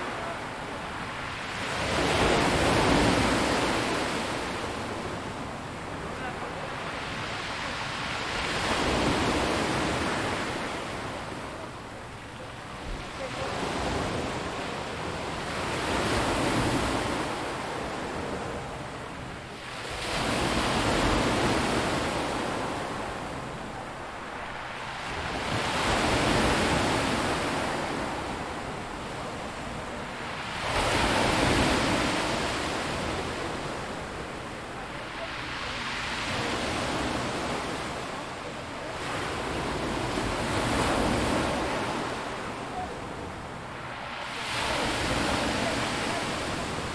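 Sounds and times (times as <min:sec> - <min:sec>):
waves breaking on rocky beach: 0:20.2 - 0:46.9.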